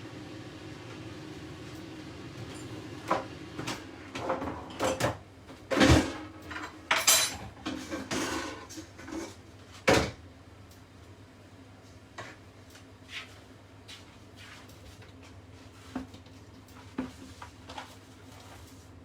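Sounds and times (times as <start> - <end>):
cookware and utensils clattering: 4.2 - 10.2.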